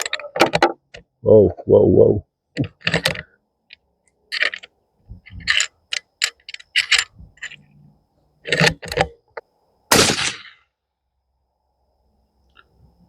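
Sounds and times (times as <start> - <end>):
suppressed rifle shot: 9.9 - 10.6.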